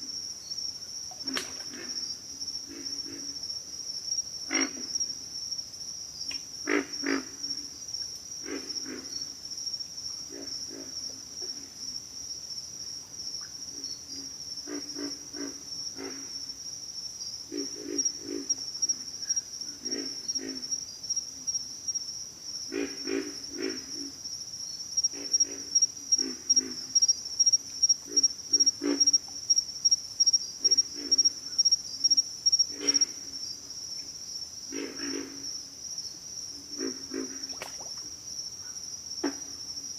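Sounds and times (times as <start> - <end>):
insect chorus trilling: 0.0 - 39.9
frogs grunting: 1.1 - 3.4, 4.5 - 5.1, 6.6 - 7.6, 8.4 - 9.3, 14.6 - 16.4, 17.5 - 19.0, 19.7 - 20.8, 22.7 - 24.2, 25.0 - 29.6, 30.2 - 33.4, 34.6 - 35.6, 36.6 - 39.7.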